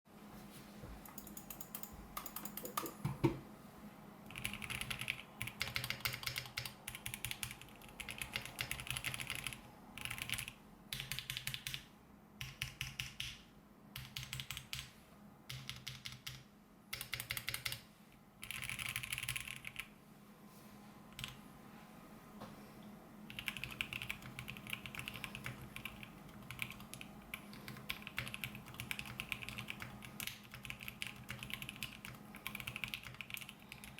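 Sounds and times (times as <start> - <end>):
mechanical keyboard typing: 1.1 - 3.2, 4.3 - 11.8, 12.4 - 13.4, 14.0 - 14.9, 15.5 - 17.8, 18.4 - 19.9, 21.2 - 21.4, 23.3 - 33.9.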